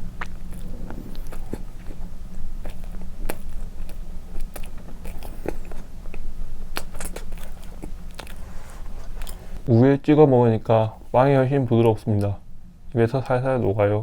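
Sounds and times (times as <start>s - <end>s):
mouth clicks and squishes: 0.0s - 9.6s
close chewing of soft bread: 0.0s - 9.7s.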